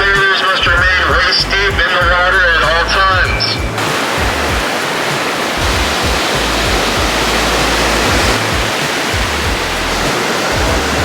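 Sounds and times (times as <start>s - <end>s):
wind buffeting microphone: 3.5s - 11.0s
ocean surf rushing: 3.8s - 11.0s.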